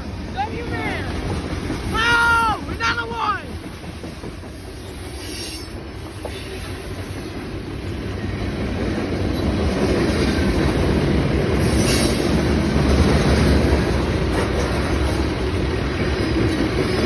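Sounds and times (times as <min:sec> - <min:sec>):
freight train rolling past: 0:00.0 - 0:17.0.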